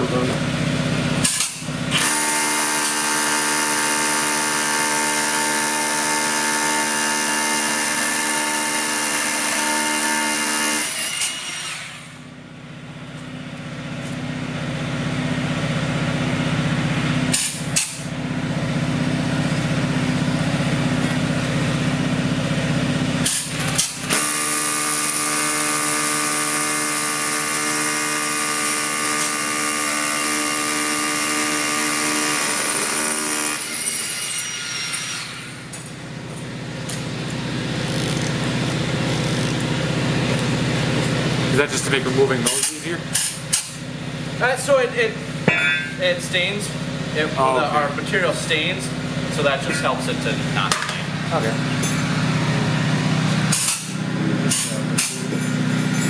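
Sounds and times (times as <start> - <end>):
power tool motor whine: 1.2 - 12.3, 23.1 - 41.6.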